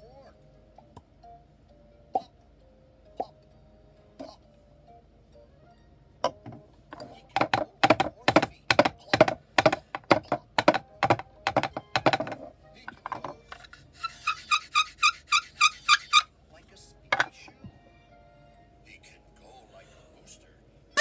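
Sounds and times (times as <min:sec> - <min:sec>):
sharp knocks: 0:07.4 - 0:12.4.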